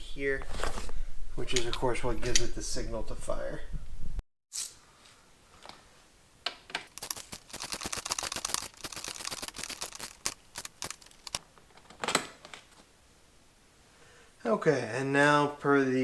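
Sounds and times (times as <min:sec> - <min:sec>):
ratchet wrench clicking: 0:06.9 - 0:11.4.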